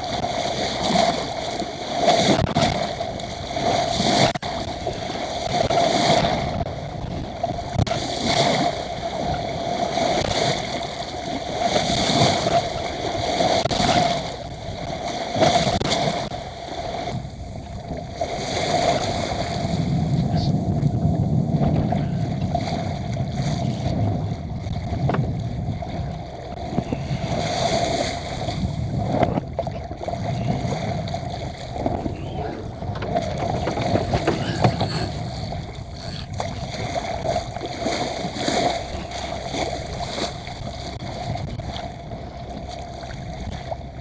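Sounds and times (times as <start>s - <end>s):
water rushing along a hull: 0.0s - 44.0s
wind noise: 18.6s - 42.6s.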